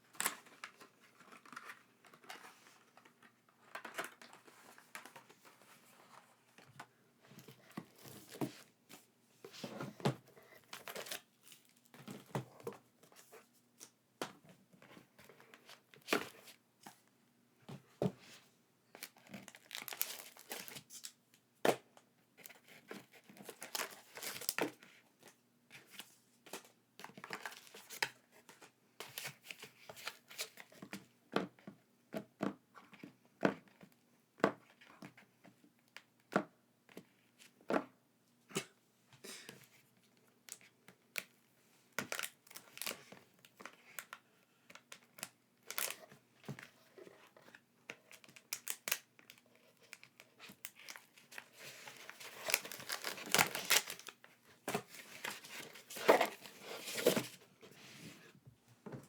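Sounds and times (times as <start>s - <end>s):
packaging crinkling and tearing: 19.0s - 20.8s, 42.0s - 43.0s, 45.6s - 46.0s, 48.1s - 54.2s.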